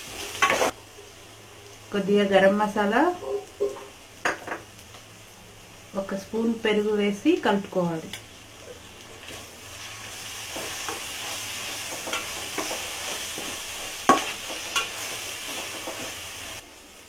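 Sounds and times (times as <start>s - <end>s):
frying sizzle: 0.0s - 17.0s.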